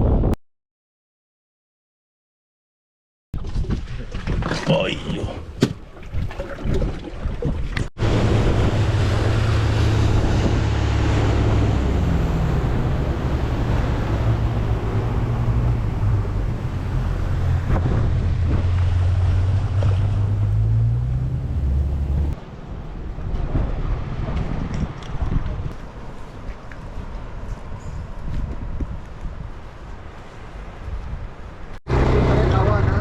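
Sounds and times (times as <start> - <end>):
wind buffeting microphone: 5.2 - 32.2
boat engine running: 8.0 - 22.4, 31.9 - 33.0
water rushing past: 8.0 - 24.7.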